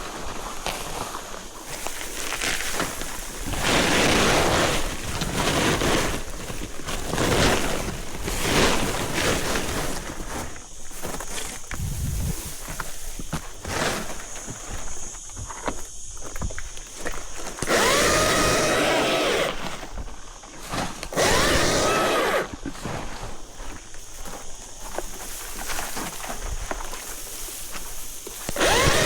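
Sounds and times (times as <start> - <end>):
branches rustling and clicking: 0.0 - 29.0
battery chainsaw cutting: 17.6 - 20.0, 21.0 - 22.6, 28.4 - 29.0.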